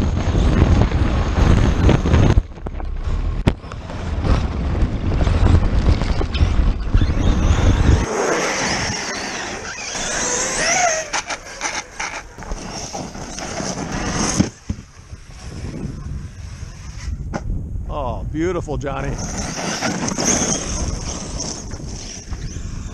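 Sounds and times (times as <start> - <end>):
wind buffeting microphone: 0.0 - 22.9
electric motor whine of rc car: 5.3 - 17.2, 19.2 - 22.9.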